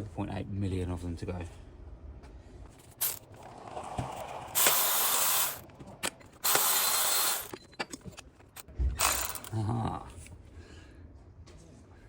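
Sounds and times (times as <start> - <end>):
ratchet wrench ratcheting: 3.0 - 3.2, 4.6 - 5.6, 6.3 - 7.6, 9.0 - 9.6.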